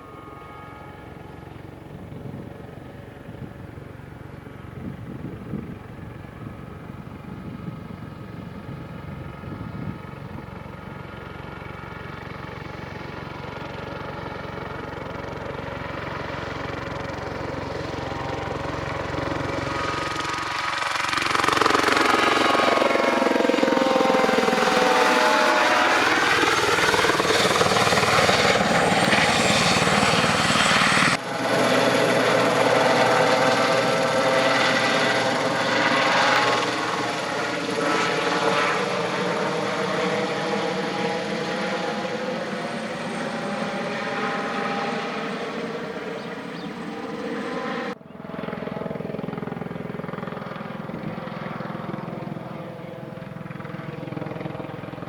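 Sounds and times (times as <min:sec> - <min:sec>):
helicopter passing by: 0:00.0 - 0:55.0.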